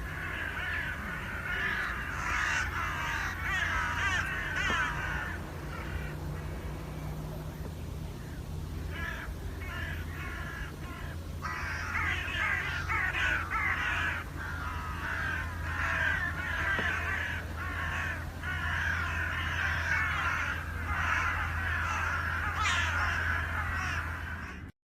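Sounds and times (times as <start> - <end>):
crows cawing: 0.0 - 24.7
steady low hum: 0.0 - 24.7.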